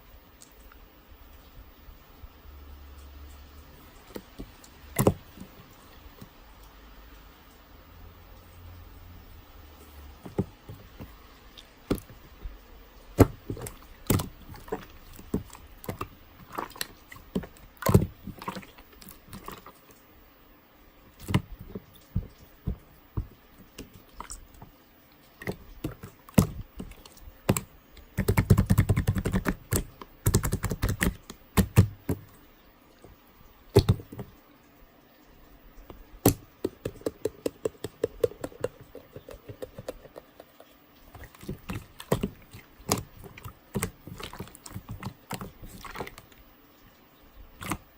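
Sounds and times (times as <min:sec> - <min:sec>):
slime clicking and popping: 0:25.4 - 0:32.3.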